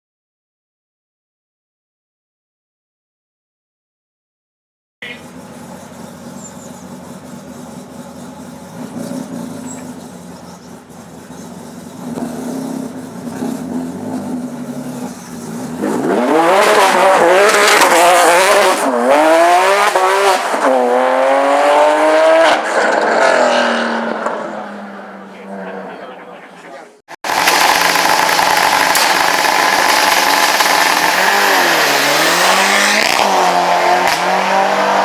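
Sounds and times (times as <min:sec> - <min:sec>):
rally car accelerating past: 0:12.1 - 0:25.8, 0:30.9 - 0:35.0.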